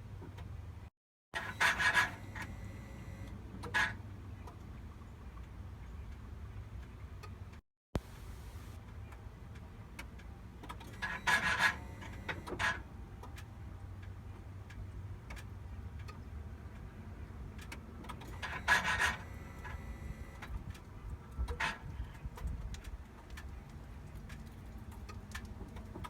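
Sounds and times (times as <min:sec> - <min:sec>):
steady low hum: 0:01.5 - 0:03.3, 0:08.0 - 0:08.8, 0:11.0 - 0:12.5, 0:18.4 - 0:20.5.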